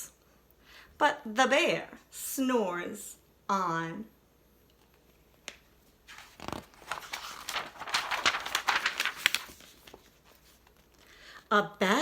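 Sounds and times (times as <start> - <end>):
paper page rustling: 6.0 - 11.2.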